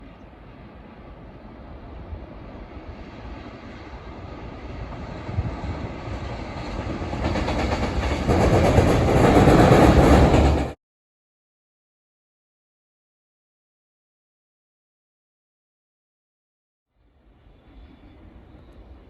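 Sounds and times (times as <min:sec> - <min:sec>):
train rumble and wheel clatter: 0:00.0 - 0:10.8, 0:17.2 - 0:19.0.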